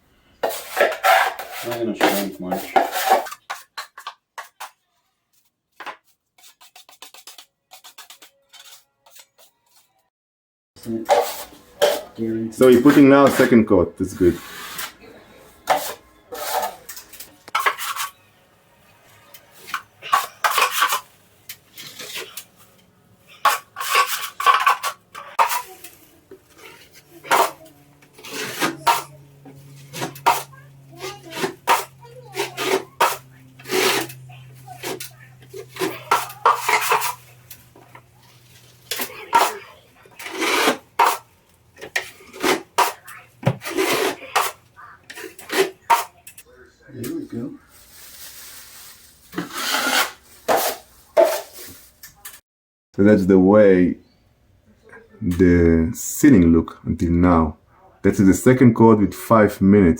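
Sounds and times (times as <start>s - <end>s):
taping knife scraping a mud pan: 0.4s - 4.8s, 6.4s - 9.9s, 11.1s - 12.1s, 17.5s - 18.1s, 19.7s - 21.0s, 21.7s - 22.5s, 23.4s - 37.3s, 38.9s - 46.1s, 49.4s - 51.5s.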